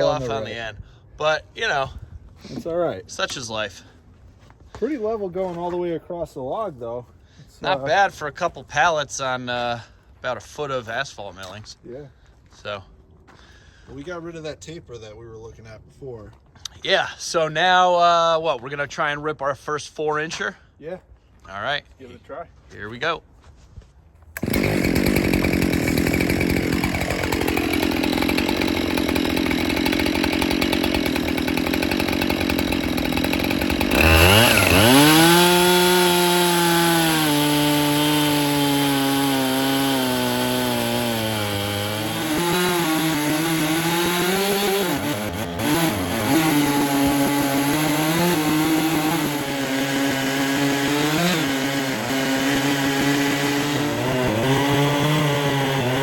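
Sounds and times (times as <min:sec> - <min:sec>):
chainsaw cutting log: 0:24.4 - 0:56.0.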